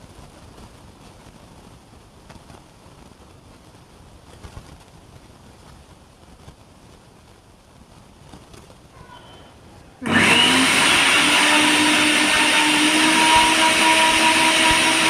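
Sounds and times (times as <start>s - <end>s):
mixer grinder motor whining: 10.0s - 15.0s.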